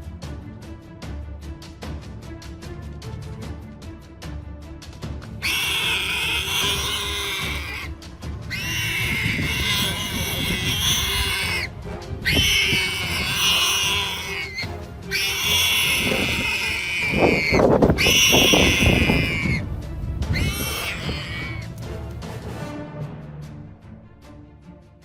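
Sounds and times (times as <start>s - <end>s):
background music: 0.0s - 25.0s
wild boar squealing: 5.4s - 19.6s, 20.3s - 21.7s.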